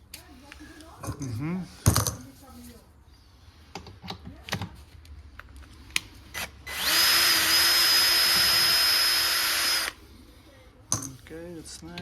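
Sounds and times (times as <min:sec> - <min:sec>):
cordless drill whining: 0:06.4 - 0:10.0.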